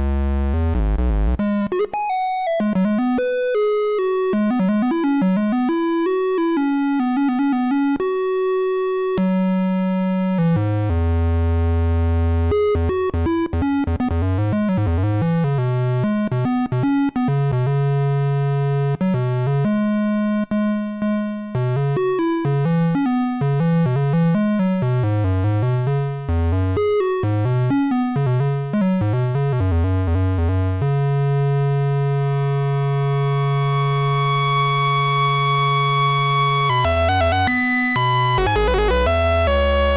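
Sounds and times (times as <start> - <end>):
synthesizer bass note: 32.2 - 39.9
synthesizer notes: 32.2 - 39.9.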